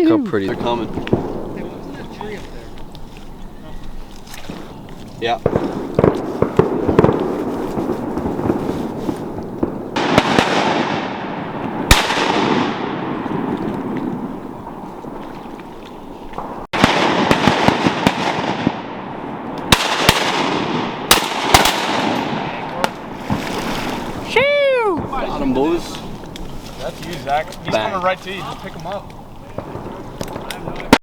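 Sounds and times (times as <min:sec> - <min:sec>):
shotgun blasts with echo: 0:05.4 - 0:08.6, 0:09.6 - 0:14.3, 0:16.4 - 0:23.8.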